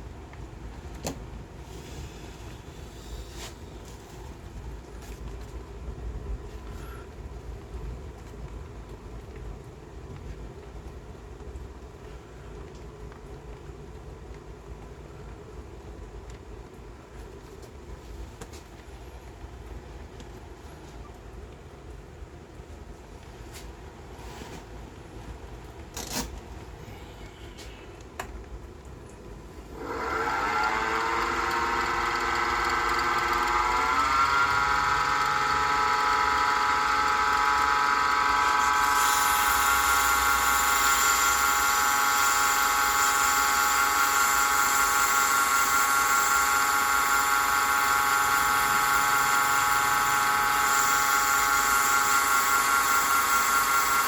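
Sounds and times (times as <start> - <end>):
wood lathe motor whine: 29.7 - 54.0.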